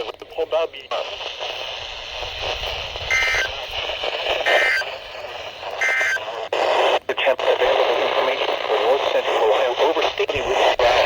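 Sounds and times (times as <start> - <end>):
radio static: 0.0 - 11.0
two-tone digital data tones: 3.1 - 3.6, 4.4 - 4.9, 5.8 - 6.2.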